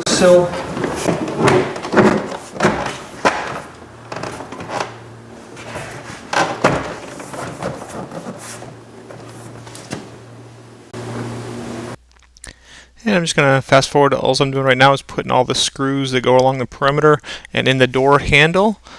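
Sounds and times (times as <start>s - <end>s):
plastic door panel knocking: 0.4s - 9.2s.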